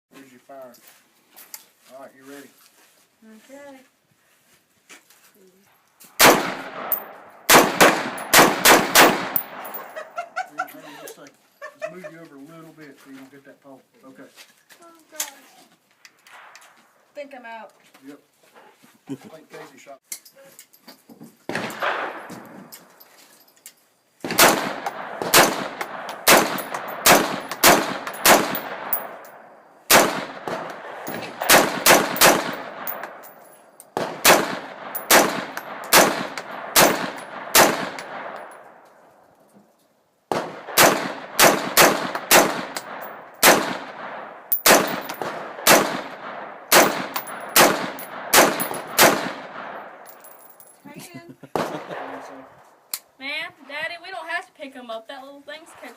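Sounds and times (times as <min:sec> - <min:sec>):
rifle gunshots: 0:06.2 - 0:09.9, 0:21.5 - 0:22.6, 0:24.2 - 0:33.3, 0:34.0 - 0:38.6, 0:40.3 - 0:50.1, 0:51.5 - 0:52.4.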